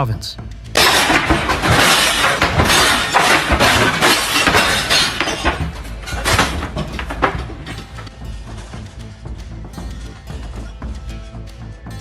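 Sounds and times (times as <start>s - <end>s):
crashing and clattering: 0.7s - 9.0s
glass breaking: 0.8s - 8.1s
objects falling: 0.8s - 8.9s.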